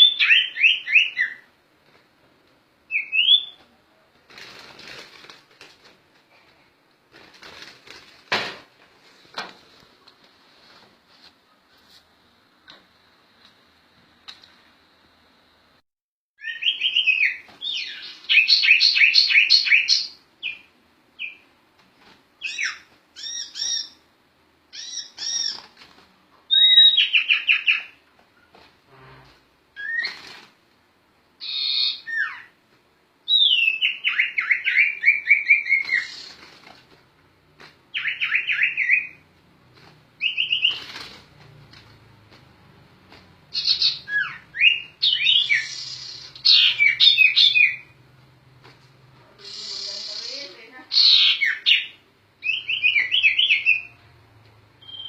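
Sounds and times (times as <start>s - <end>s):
songbird singing: 16.4s - 21.4s, 33.3s - 36.3s, 37.9s - 39.2s, 40.2s - 40.8s, 43.5s - 48.0s, 49.3s - 54.1s, 54.8s - 55.0s.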